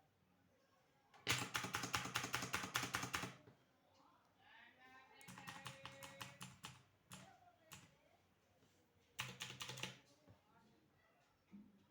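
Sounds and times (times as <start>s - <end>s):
mechanical keyboard typing: 1.3s - 3.4s, 5.3s - 7.9s, 9.2s - 10.0s.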